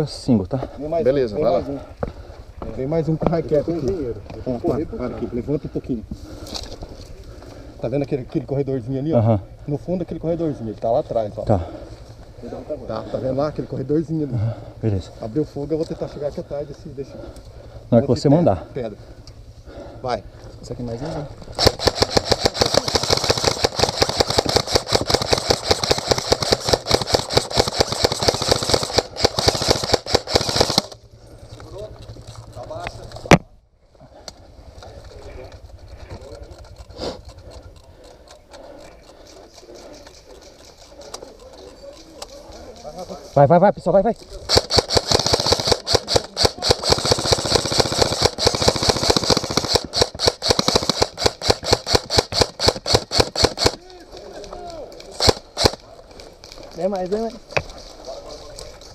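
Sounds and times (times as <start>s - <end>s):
airsoft gun full-auto firing: 21.6s - 31.0s, 44.5s - 53.8s, 55.2s - 55.8s.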